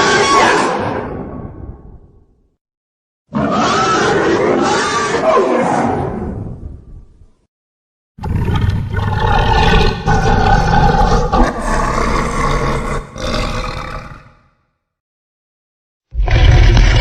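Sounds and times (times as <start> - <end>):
dinosaur roar: 8.2 - 14.5.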